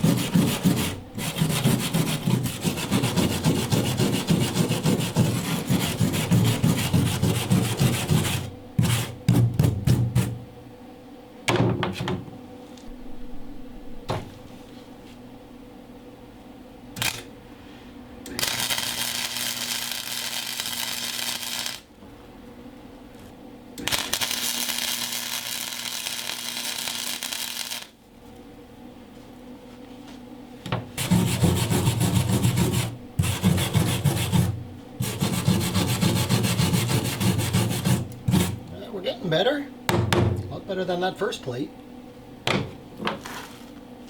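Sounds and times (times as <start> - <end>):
welder arc crackling: 18.3 - 21.9, 23.8 - 28.0.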